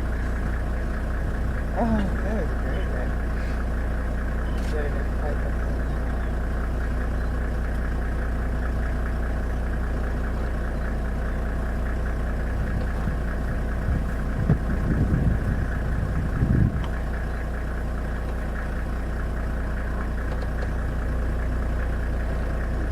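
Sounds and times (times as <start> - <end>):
vehicle engine idling: 0.0 - 22.9
uneven low rumble: 10.0 - 21.2.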